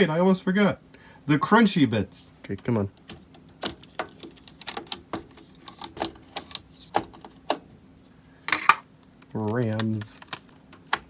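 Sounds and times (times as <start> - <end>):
computer parts clicking into slots: 2.6 - 7.8, 8.5 - 11.0.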